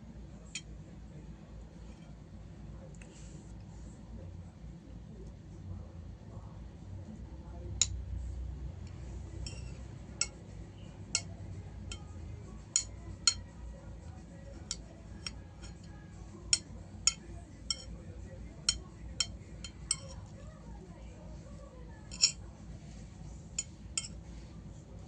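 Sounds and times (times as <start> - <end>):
cutlery clinking on a plate: 9.4 - 10.4, 11.1 - 12.1, 12.7 - 13.5, 14.6 - 17.9, 18.6 - 20.3, 22.1 - 22.4, 23.6 - 24.2.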